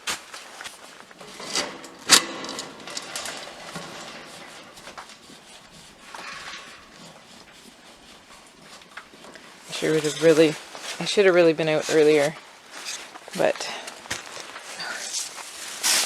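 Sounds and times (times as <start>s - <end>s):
fabric rustling and sliding: 14.2s - 16.0s.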